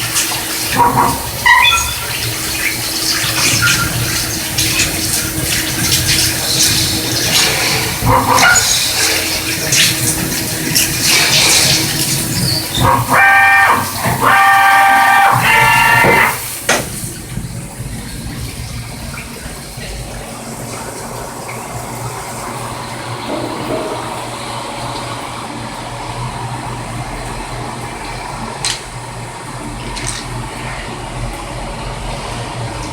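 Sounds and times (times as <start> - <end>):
coolant liquid rushing: 0.0 - 32.9
low machine hum: 0.0 - 32.9
short pitched tone: 0.7 - 4.0.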